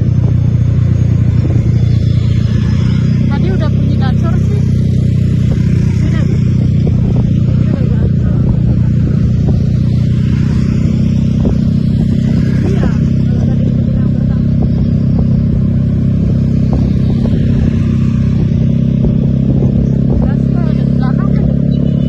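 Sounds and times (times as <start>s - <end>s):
vehicle engine running steadily: 0.0s - 22.0s.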